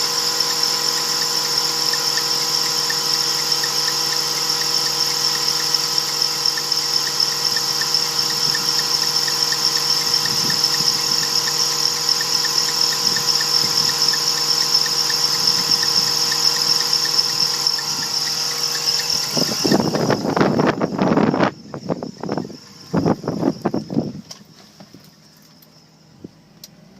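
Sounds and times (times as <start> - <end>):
drive belt squealing: 0.0 - 26.0
car engine idling: 0.0 - 26.9
faint regular ticking: 1.0 - 20.3.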